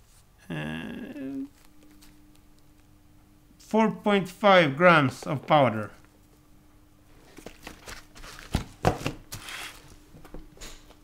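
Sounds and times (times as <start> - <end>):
packaging rustling: 7.2 - 10.0.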